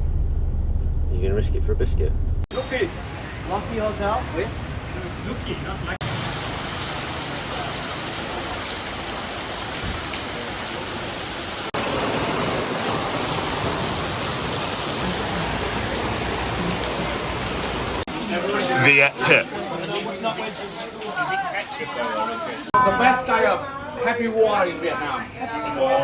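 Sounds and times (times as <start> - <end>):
heavy rain: 2.5 - 21.4.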